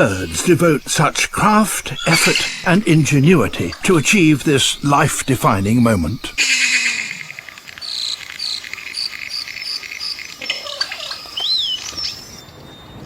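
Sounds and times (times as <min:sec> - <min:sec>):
insects chirping: 0:00.0 - 0:13.0
bird warbling whistle: 0:01.9 - 0:03.8, 0:06.4 - 0:13.0.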